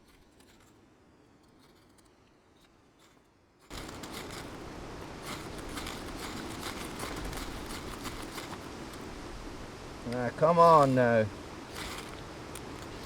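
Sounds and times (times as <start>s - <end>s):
faint scraping and rustling: 0.0s - 13.0s
wind-driven rain: 3.7s - 13.0s.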